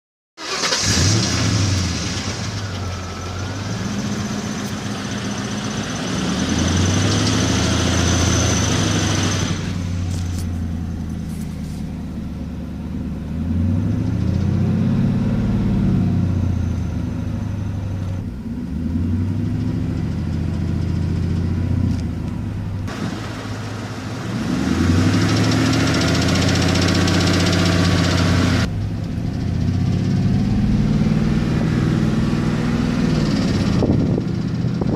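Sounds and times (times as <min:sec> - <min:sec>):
car engine revving: 0:00.4 - 0:34.9
engine ticking: 0:19.6 - 0:34.9.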